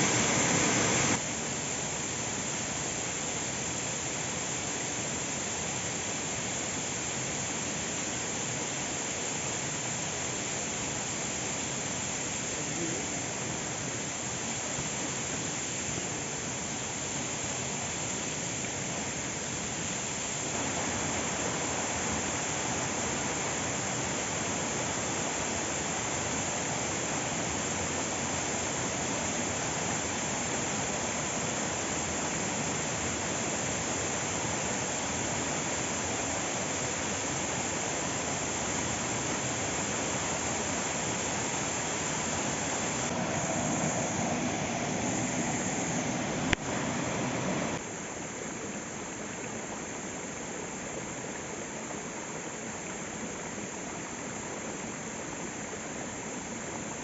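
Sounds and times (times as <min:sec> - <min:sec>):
waterfall rushing: 0:00.0 - 0:01.6, 0:07.7 - 0:47.9.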